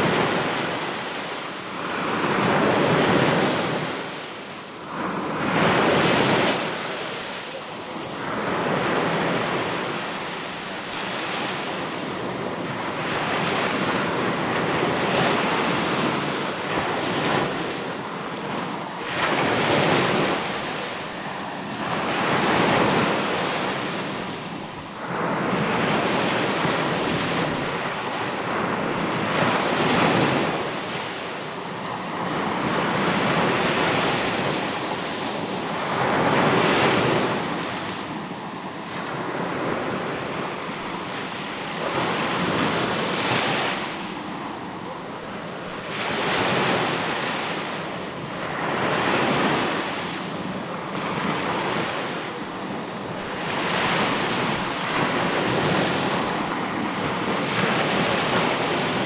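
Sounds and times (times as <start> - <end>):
sea waves surf rushing: 0.0 - 59.0.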